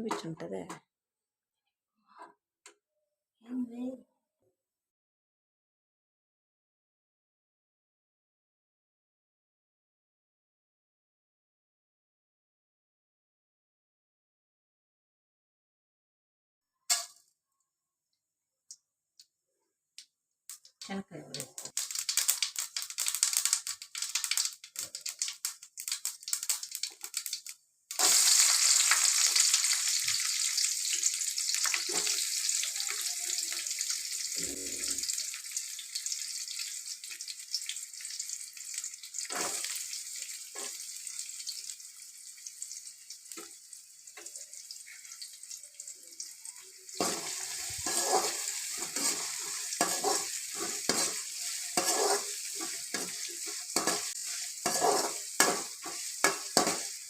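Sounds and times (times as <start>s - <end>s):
food frying in hot oil: 20.5s - 57.0s
spoon scraping pan: 31.6s - 32.3s, 39.2s - 39.8s, 40.5s - 40.9s, 47.0s - 57.0s.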